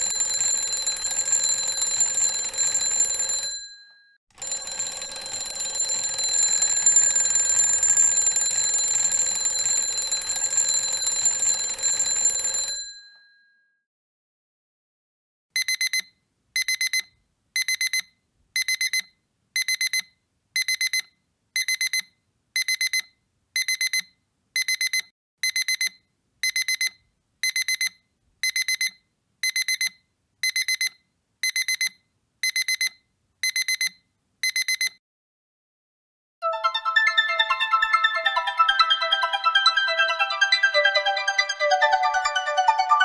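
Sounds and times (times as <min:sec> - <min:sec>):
digital alarm clock beeping: 0:15.6 - 0:35.0
keyboard music: 0:36.4 - 0:43.0.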